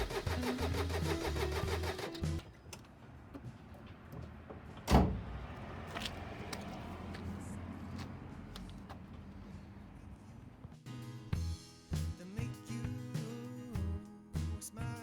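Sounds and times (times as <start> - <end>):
diesel engine cranking on starter: 0.0 - 2.4.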